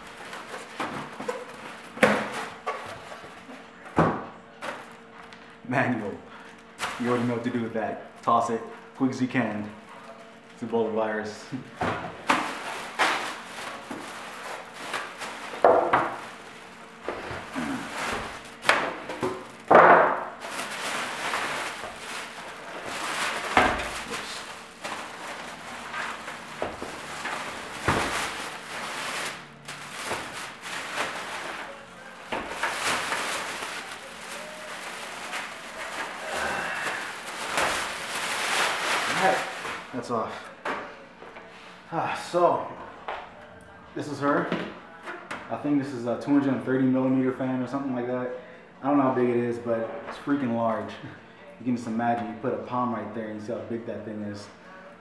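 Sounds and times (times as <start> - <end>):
packing material rustling: 12.2 - 40.0.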